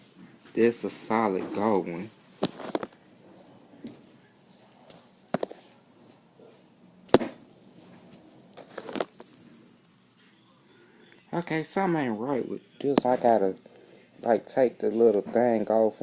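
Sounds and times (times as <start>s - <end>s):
faint high rattle: 7.3s - 10.8s.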